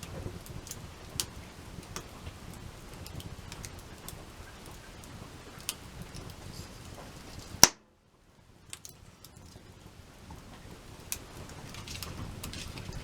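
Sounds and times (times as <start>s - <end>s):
campfire crackling: 0.0s - 13.0s
loud pop: 7.6s - 7.8s.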